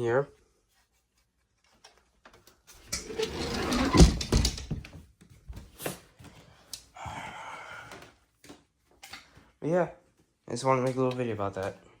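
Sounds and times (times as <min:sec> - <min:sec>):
wooden drawer scraping open: 0:03.0 - 0:04.7.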